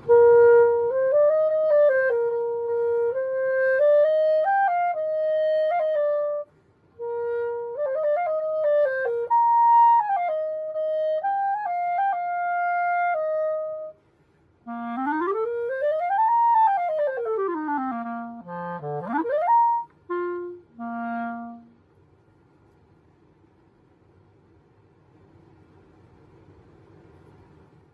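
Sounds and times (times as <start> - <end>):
clarinet melody: 0.0 - 14.0, 14.6 - 21.9.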